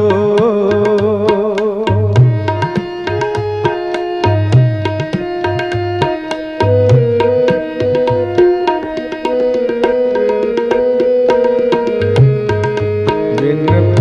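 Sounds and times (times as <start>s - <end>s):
harmonium melody: 0.0s - 14.0s
tabla rhythm: 0.0s - 14.0s.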